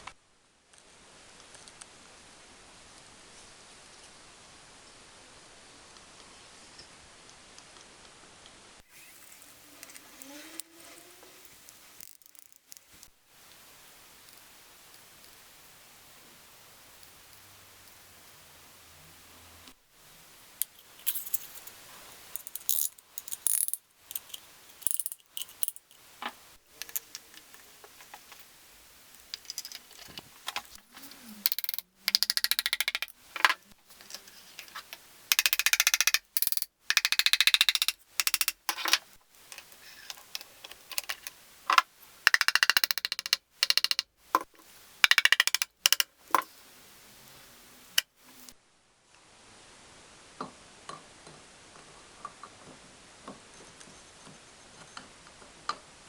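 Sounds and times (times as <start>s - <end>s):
metal tools clinking and rattling: 20.6s - 21.7s
rapid clicking: 31.4s - 33.6s, 35.3s - 38.7s, 40.9s - 44.0s, 45.0s - 46.4s.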